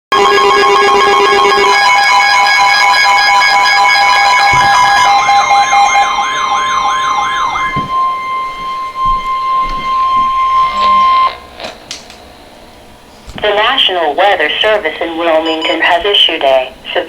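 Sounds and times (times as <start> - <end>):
siren-like warble: 0.1 - 12.8
alert attention tones: 2.6 - 11.5.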